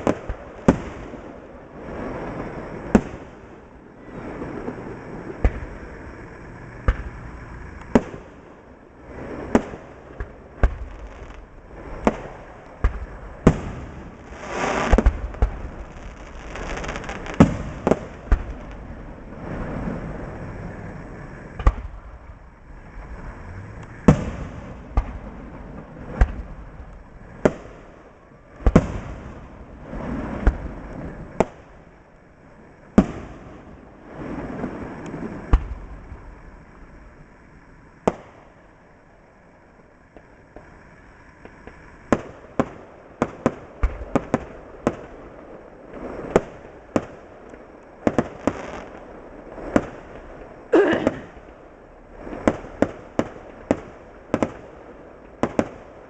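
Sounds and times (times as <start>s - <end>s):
fireworks crackling: 0.0s - 56.0s
firework shells bursting: 9.4s - 18.9s.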